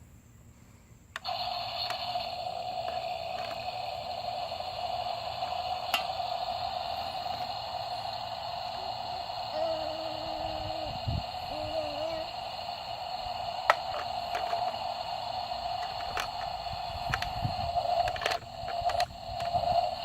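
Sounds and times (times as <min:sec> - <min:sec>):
toy motor switch click: 0:01.2 - 0:03.8, 0:05.8 - 0:06.3, 0:13.6 - 0:14.8, 0:15.6 - 0:19.9
electric motor whine: 0:09.5 - 0:20.0.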